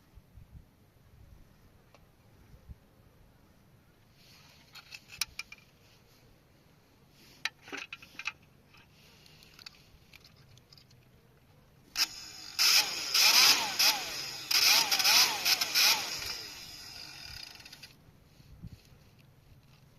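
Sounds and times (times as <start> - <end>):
small objects clicking and rattling: 7.6 - 11.1.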